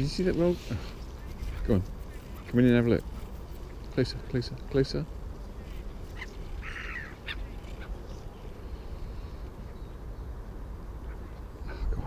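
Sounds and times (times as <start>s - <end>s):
harsh bird call: 6.2s - 8.0s.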